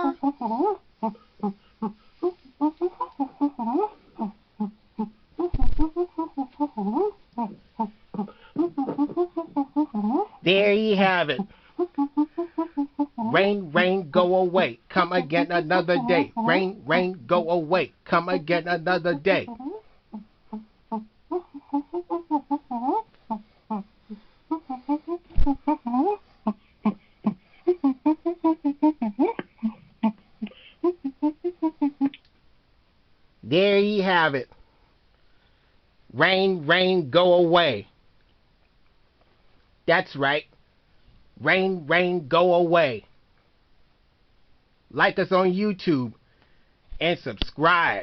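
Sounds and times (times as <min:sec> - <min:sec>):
man making vocal percussion: 0:00.0 - 0:01.6, 0:02.2 - 0:23.0, 0:24.5 - 0:32.2
person chanting a rhyme: 0:13.2 - 0:19.6.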